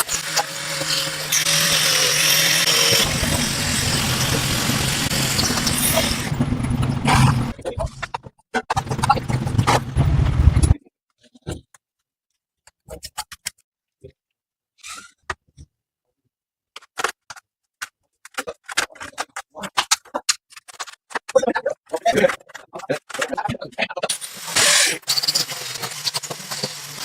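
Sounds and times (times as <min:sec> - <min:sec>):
machine humming: 0:00.1 - 0:07.6.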